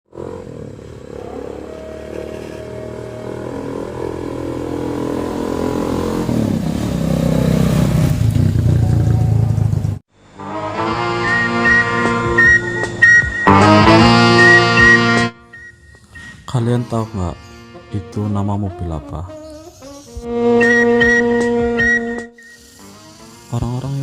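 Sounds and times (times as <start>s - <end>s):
motorcycle engine running: 0.1s - 10.0s
music: 10.2s - 24.0s.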